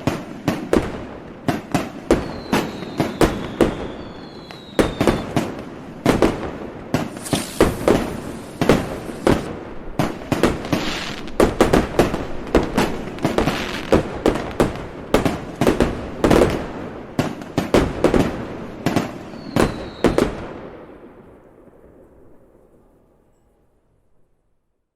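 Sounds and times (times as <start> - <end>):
fireworks crackling: 0.0 - 20.6
fireworks bangs and booms: 0.0 - 22.8
falling firework whistle: 2.1 - 5.5, 6.9 - 9.5, 19.2 - 20.4.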